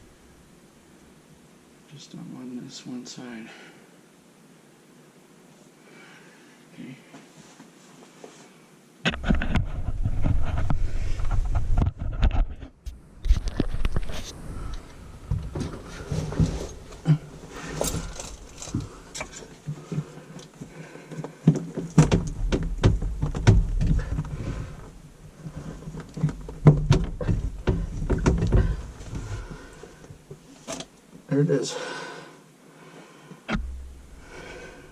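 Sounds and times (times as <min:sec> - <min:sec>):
rumbling handling noise: 0:09.1 - 0:31.1, 0:33.5 - 0:34.9
plumbing parts clicking and knocking: 0:14.7 - 0:30.9.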